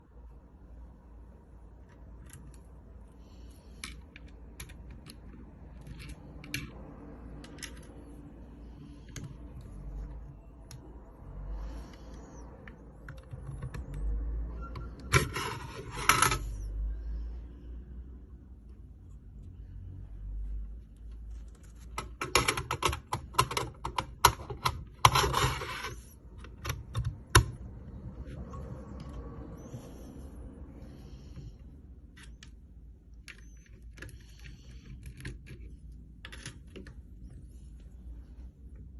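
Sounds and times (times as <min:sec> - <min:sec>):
rapid irregular clicks and taps: 0:11.8 - 0:14.1, 0:21.3 - 0:25.5.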